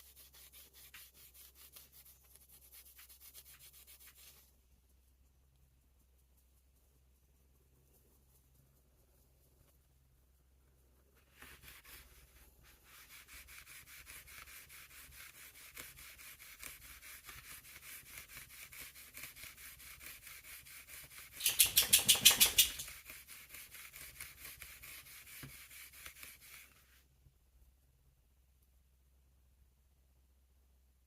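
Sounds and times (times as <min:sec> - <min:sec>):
emery cloth rubbing on metal: 0:00.0 - 0:04.5, 0:10.4 - 0:27.0.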